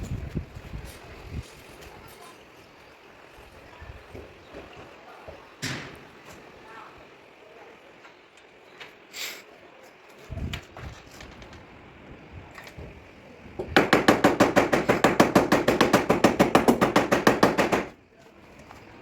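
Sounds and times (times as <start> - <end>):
rapid hammer blows on sheet metal: 13.6 - 18.0.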